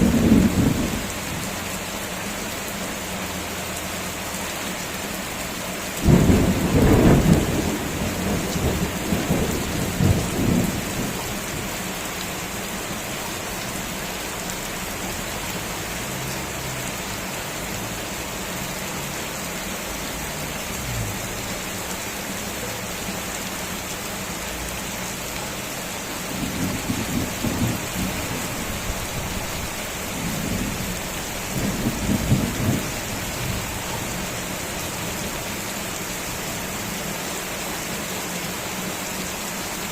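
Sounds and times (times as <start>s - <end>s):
thunder rumbling: 0.0s - 1.1s, 6.0s - 11.6s, 26.3s - 34.0s
steady rain: 0.0s - 39.9s.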